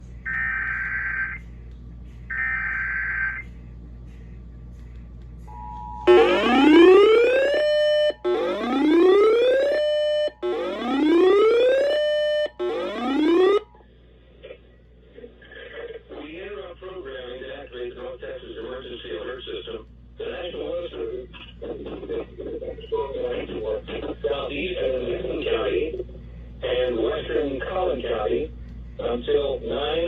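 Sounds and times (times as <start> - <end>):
two-tone attention signal: 5.5 - 13.6
rising siren-like whoop: 6.1 - 13.7.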